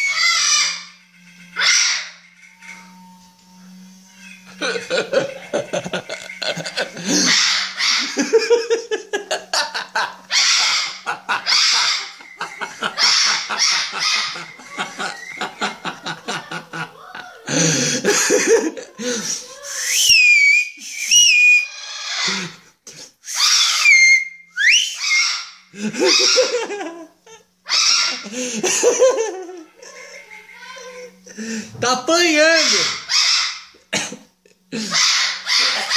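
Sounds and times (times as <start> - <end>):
parrot screaming and squawking: 0.0 - 1.0, 1.6 - 2.3, 6.0 - 9.0, 10.0 - 16.0, 21.2 - 22.6, 23.3 - 26.8, 27.6 - 28.5, 32.2 - 33.8, 34.8 - 35.9
steady low hum: 0.0 - 19.9, 24.1 - 35.9
whistled glides: 19.7 - 21.7, 23.3 - 25.2.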